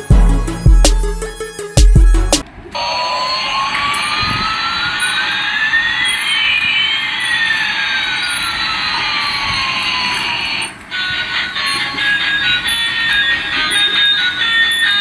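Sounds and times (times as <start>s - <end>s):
electronic jet engine effect: 0.0s - 10.8s.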